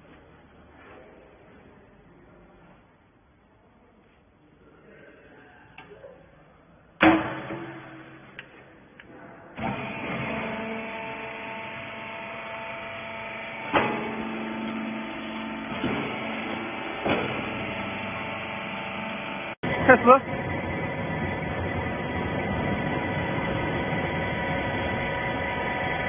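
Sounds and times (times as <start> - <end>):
loud bang of gate slamming: 7.0 - 8.4
baling machine motor humming: 9.6 - 26.0.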